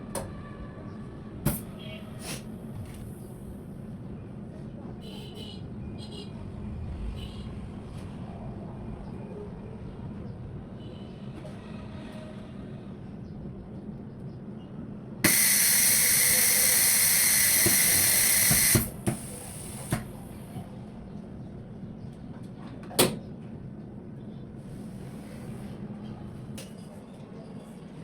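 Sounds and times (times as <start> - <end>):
compressed air hissing: 15.2 - 20.4.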